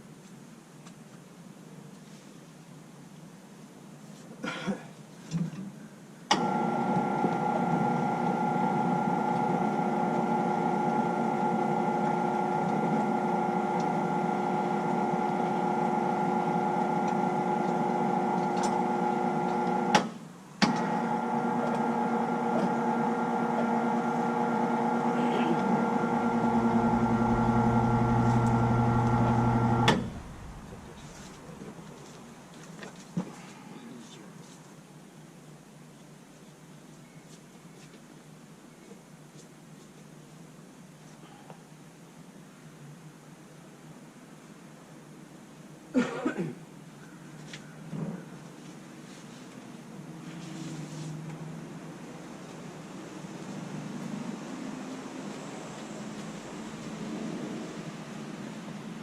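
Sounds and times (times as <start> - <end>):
electric winch motor whine: 6.3 - 31.8
low hum: 23.3 - 32.2.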